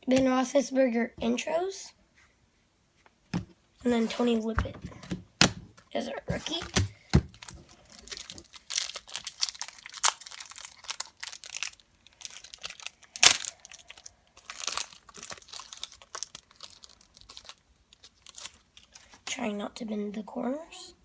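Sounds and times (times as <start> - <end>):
foil wrapper crinkling: 6.4 - 19.2.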